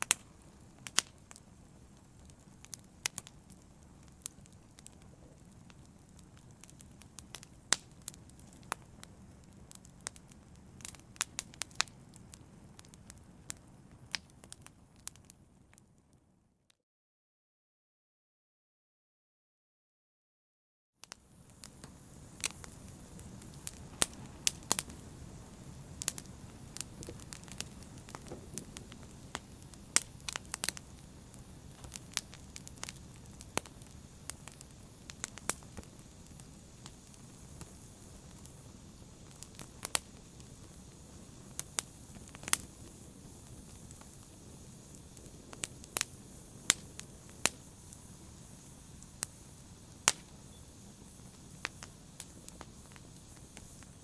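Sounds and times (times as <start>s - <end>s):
fire crackling and popping: 0.0s - 16.2s, 21.0s - 54.0s
soft rumble of flames: 0.0s - 16.4s, 21.0s - 54.0s.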